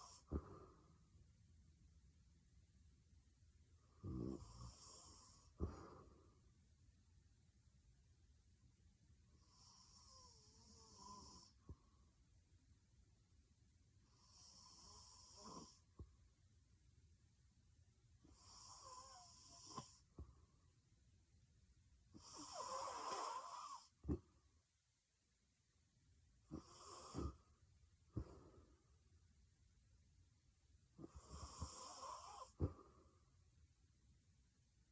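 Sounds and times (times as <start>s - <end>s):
woman snoring: 4.0s - 5.8s, 9.4s - 11.6s, 14.2s - 15.9s, 18.3s - 20.0s, 22.2s - 24.0s, 26.5s - 27.4s, 31.0s - 32.7s.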